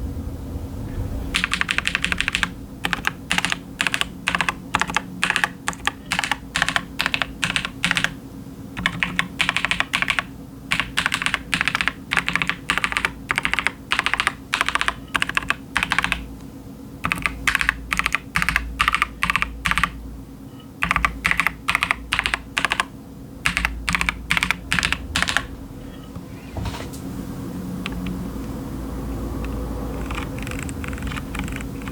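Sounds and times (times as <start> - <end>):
steady low hum: 0.0 - 31.9
typing on mechanical keyboard: 1.4 - 8.2, 8.8 - 16.3, 17.0 - 20.0, 20.8 - 25.5, 30.0 - 31.9.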